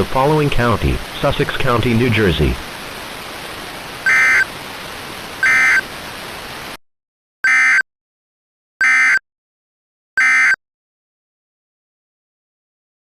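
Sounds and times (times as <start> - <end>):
steady hiss: 0.0 - 6.8
buzzy digital squawks: 4.1 - 4.4, 5.4 - 5.8.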